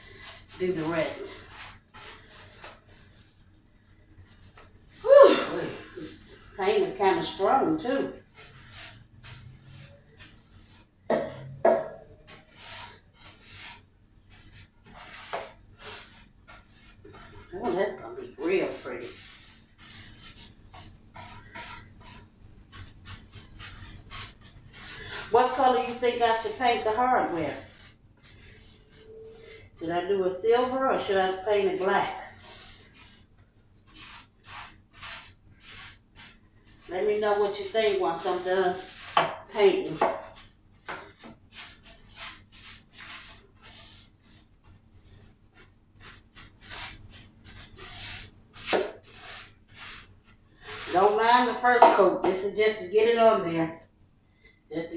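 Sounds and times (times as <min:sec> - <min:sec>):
paintbrush swishing strokes: 0:00.0 - 0:03.5, 0:04.2 - 0:53.0
sharp scrape: 0:12.2 - 0:29.6, 0:33.9 - 0:52.9.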